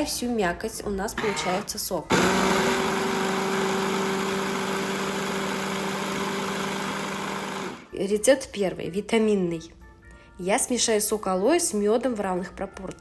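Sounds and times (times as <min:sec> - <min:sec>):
electric blender motor hum: 0:01.2 - 0:07.9.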